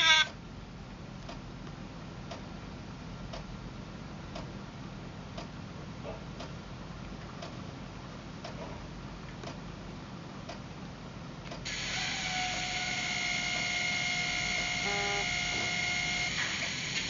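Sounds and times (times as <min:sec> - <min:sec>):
hiss with high whine: 0:11.6 - 0:17.0.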